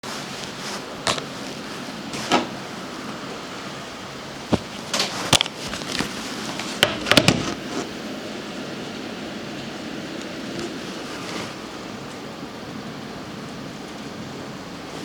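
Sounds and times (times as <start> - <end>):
steady hiss: 0.0 - 15.0
sharp clicks and knocks: 6.8 - 7.6.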